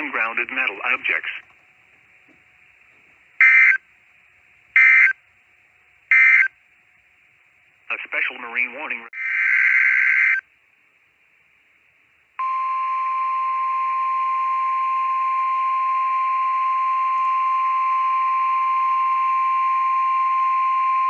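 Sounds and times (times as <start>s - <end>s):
faint radio hiss: 0.0s - 16.7s
steady alarm tone: 3.4s - 3.8s, 4.8s - 5.2s, 6.1s - 6.5s.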